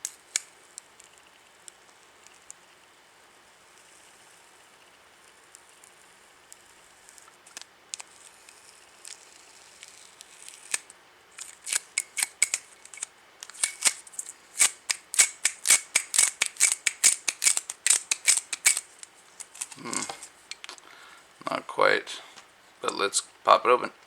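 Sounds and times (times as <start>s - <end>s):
scissors snipping packaging: 9.0s - 20.2s.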